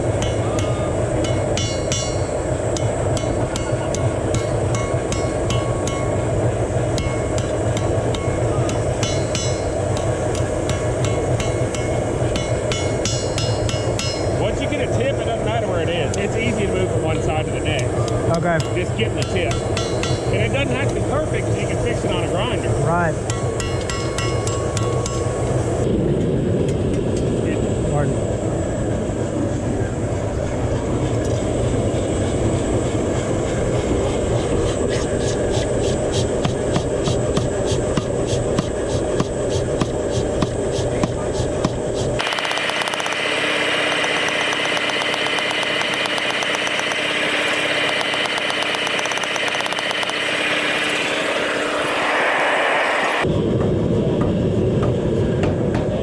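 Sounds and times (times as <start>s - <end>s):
steady low hum: 0.0s - 23.9s, 25.1s - 53.5s
hammer striking steel on anvil: 0.1s - 6.2s, 6.9s - 14.4s, 18.5s - 20.3s, 23.2s - 25.3s
faint high whine: 34.4s - 53.3s
sharp metallic taps: 36.4s - 51.2s.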